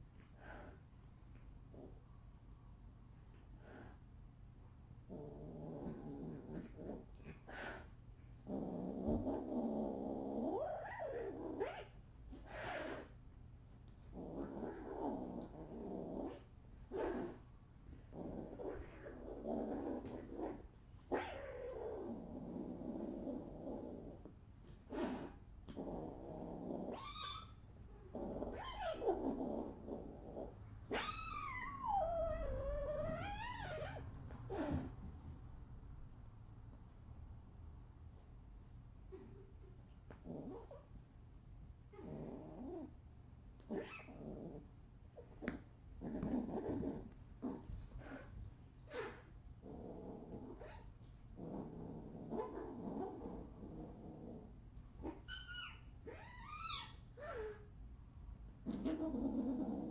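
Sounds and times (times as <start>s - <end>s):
cat hissing: 12.4s - 13.2s
cat growling and yowling: 18.1s - 24.2s, 24.9s - 27.6s, 28.2s - 35.0s, 43.7s - 44.6s, 48.9s - 57.7s, 58.7s - 59.9s.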